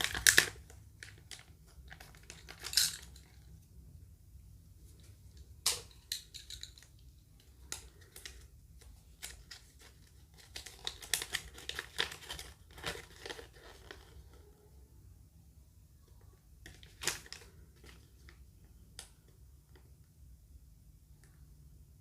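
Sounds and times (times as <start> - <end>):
plastic wrapping crinkling and tearing: 0.0 - 3.2, 9.0 - 14.4.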